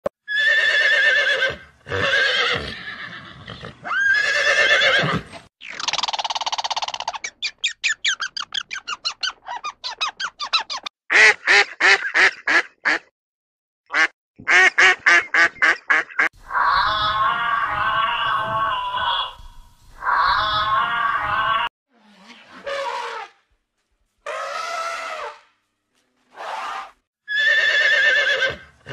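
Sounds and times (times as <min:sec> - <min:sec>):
horse whinnying: 0:00.2 - 0:05.5, 0:26.4 - 0:28.9.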